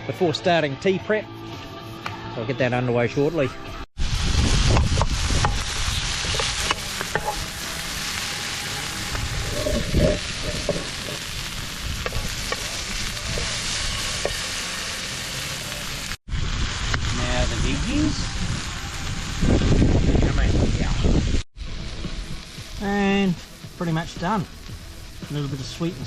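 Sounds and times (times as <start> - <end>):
chicken sizzling in a pan: 4.0 - 26.0
utensil scraping a pan: 5.4 - 8.0, 8.9 - 14.5.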